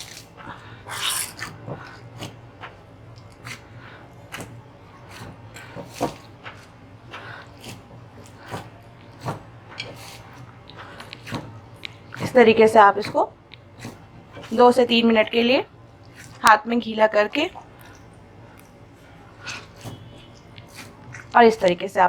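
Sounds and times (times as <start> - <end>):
hands kneading dough: 0.0 - 22.0
dough slapping against bowl: 1.5 - 15.0, 19.5 - 21.9.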